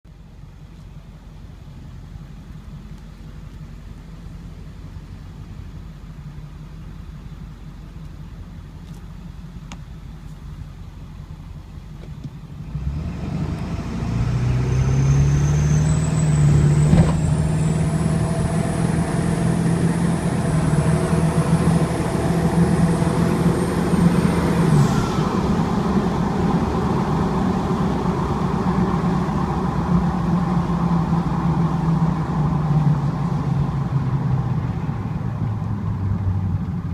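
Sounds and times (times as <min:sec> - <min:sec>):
diesel engine rumbling: 0:00.1 - 0:36.9
high-pitched squeal: 0:14.4 - 0:29.5.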